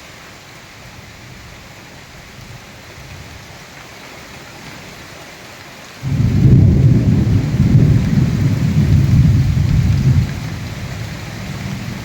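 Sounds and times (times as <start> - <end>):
heavy rain hissing: 0.0 - 12.0.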